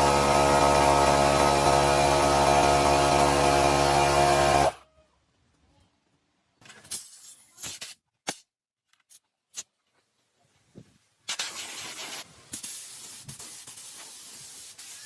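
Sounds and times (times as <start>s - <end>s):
air compressor humming: 0.0s - 4.8s.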